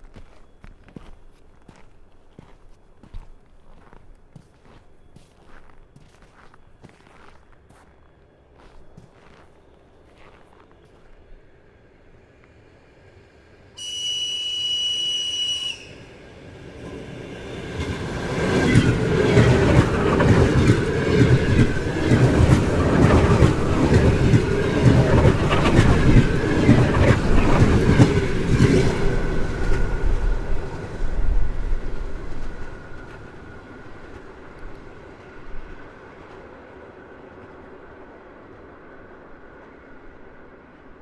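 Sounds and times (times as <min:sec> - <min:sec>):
train whistle blast: 0:13.8 - 0:16.3
train wheels clattering over rails: 0:16.9 - 0:36.5.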